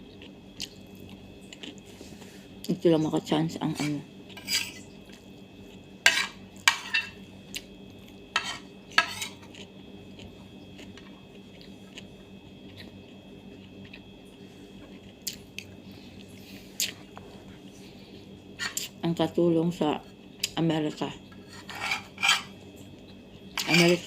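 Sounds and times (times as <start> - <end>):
faint steady hum: 0.0 - 24.0
cutlery clinking on a plate: 8.4 - 9.4.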